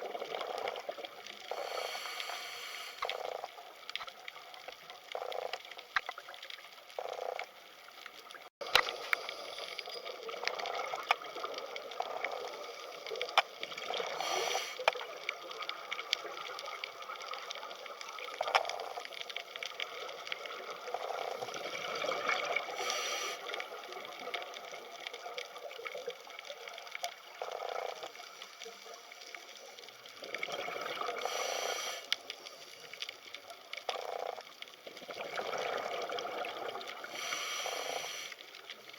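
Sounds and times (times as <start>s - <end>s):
underwater crackling clicks: 0.2s - 38.9s
underwater bubbling rushes: 10.0s - 28.3s, 29.8s - 32.5s, 33.9s - 38.9s.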